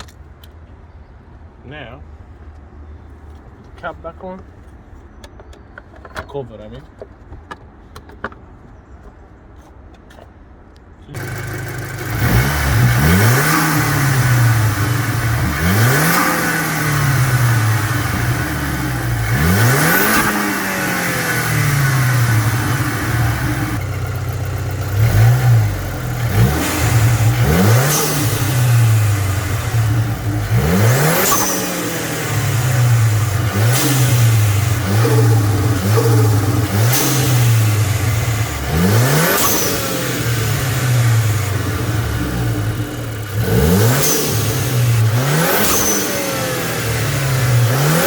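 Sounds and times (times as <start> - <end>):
car engine revving: 11.2 - 48.0.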